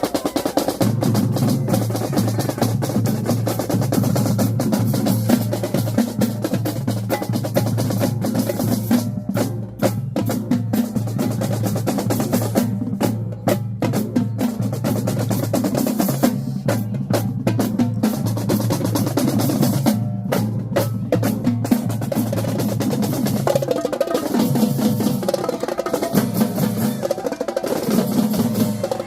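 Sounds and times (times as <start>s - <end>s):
snare drum strokes and rolls: 0.0s - 29.0s
bass drums: 0.8s - 23.6s.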